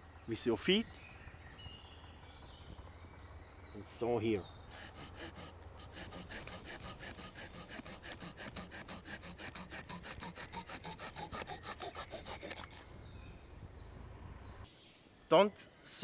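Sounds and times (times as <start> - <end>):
small saw cutting wooden stick: 4.7 - 12.9.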